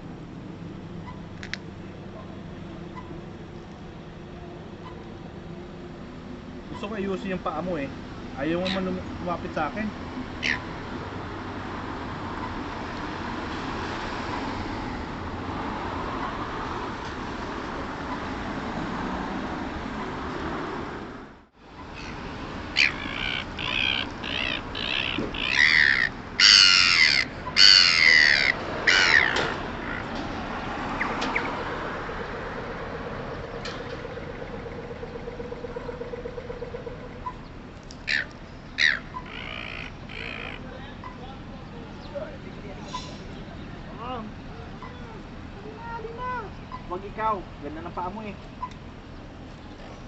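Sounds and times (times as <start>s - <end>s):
gulls squawking: 6.7s - 9.8s, 10.4s - 10.7s, 21.7s - 42.1s.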